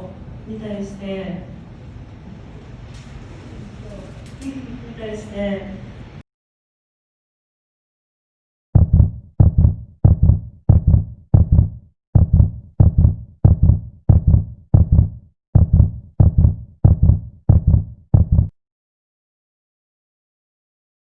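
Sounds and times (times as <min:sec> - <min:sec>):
heartbeat thumps: 0:08.8 - 0:18.6.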